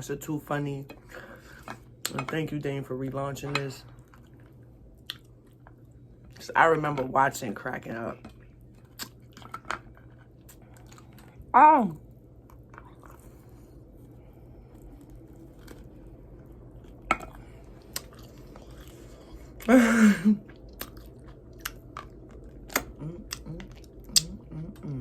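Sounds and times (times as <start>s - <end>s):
chewing chicken wings: 8.3s - 19.7s, 20.4s - 25.0s
wet mouth clicks and smacks: 22.7s - 24.4s.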